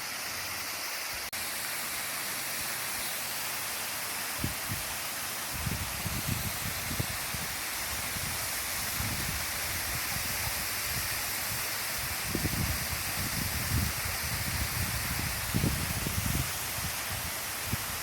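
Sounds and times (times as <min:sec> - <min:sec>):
waterfall rushing: 0:00.0 - 0:18.0.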